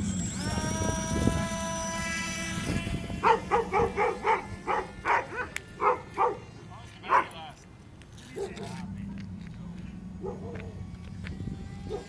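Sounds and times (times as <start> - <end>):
electric motor propeller whine: 0.0 - 12.0
dog barking and yipping: 3.2 - 7.4, 10.2 - 10.8.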